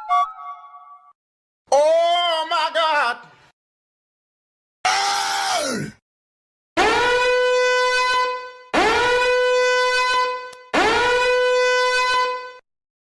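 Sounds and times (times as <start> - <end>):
horn-like sound effect: 6.8 - 12.6.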